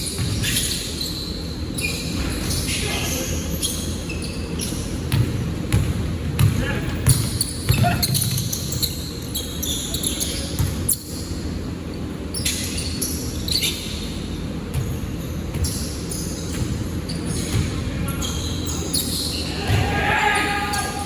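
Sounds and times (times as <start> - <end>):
sneakers squeaking: 0.0 - 21.0
basketball bouncing on floor: 5.1 - 8.5.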